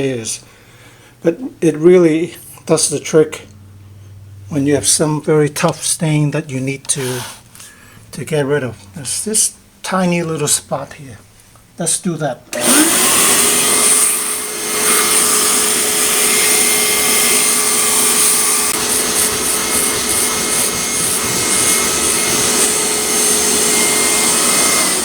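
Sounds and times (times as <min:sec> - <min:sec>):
brush scrubbing carpet: 0:07.0 - 0:07.4, 0:17.3 - 0:24.4
carpet cleaner motor whining: 0:12.5 - 0:25.0.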